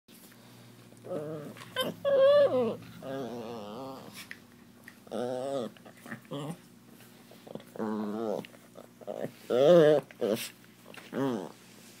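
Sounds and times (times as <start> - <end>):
small dog whining and grumbling: 1.0 - 4.2, 5.0 - 6.6, 7.4 - 11.6.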